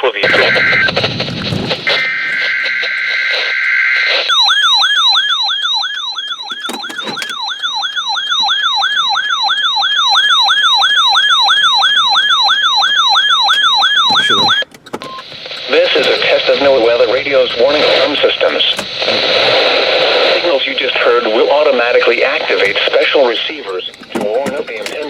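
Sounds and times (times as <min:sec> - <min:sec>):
digital header burst: 0:00.0 - 0:06.2, 0:15.2 - 0:24.8
two-tone data buzz: 0:00.2 - 0:07.9, 0:13.3 - 0:24.8
sweeping siren alarm: 0:00.2 - 0:24.9.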